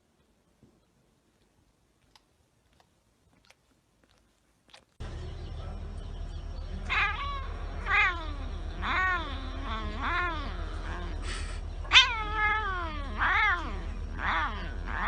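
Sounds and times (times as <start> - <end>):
low hum: 5.0 - 15.0
cat meowing: 6.9 - 11.2, 11.9 - 15.0.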